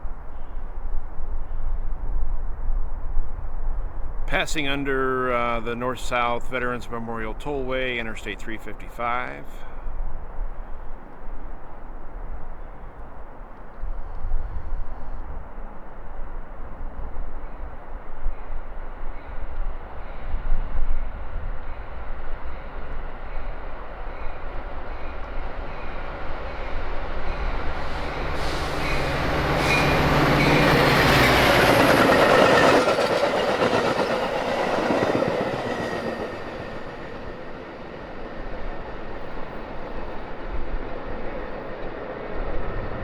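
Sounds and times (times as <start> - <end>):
diesel train engine: 4.3 - 43.0
wheels rushing on rail: 9.0 - 43.0.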